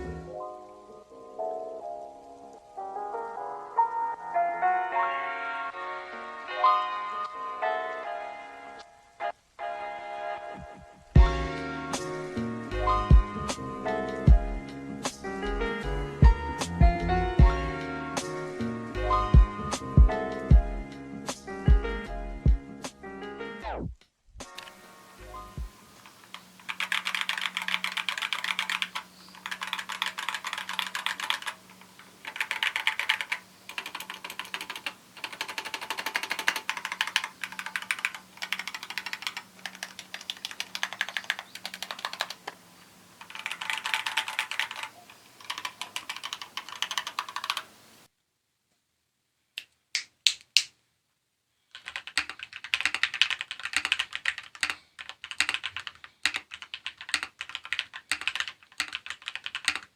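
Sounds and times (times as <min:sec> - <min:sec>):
typing on mechanical keyboard: 0:24.6 - 0:24.8, 0:26.0 - 0:42.6, 0:43.2 - 0:47.7, 0:51.7 - 0:59.9.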